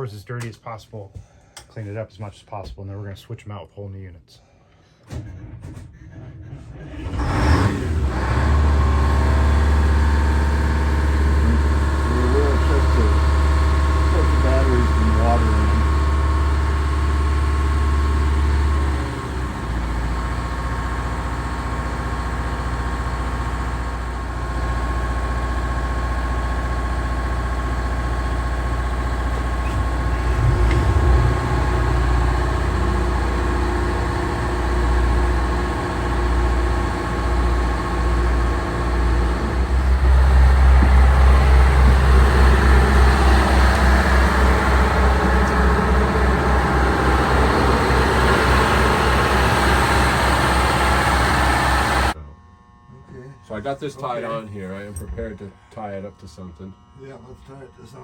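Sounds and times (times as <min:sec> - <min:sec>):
diesel boat engines humming: 0:06.9 - 0:52.2.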